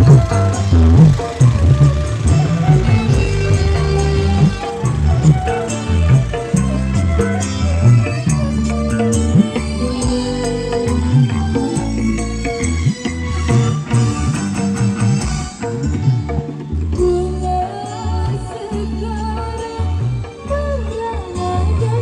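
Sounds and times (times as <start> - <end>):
procession band music: 0.0 - 17.0
sharp percussion hits: 0.0 - 17.2
deep sliding bass line: 0.0 - 21.0
held melody notes: 0.0 - 21.9.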